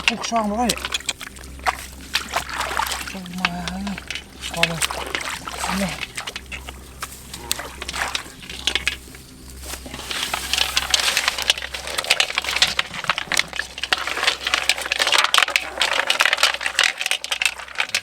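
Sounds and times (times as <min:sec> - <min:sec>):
muddy water splashing: 0:00.0 - 0:18.0.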